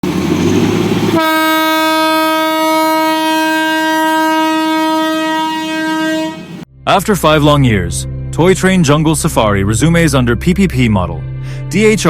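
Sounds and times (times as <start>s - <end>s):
rumbling train: 0.0s - 6.7s
train horn blast: 1.1s - 6.7s.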